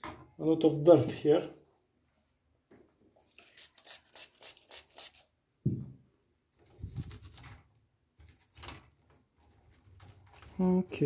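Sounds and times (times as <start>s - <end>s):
thump: 5.6s - 6.0s.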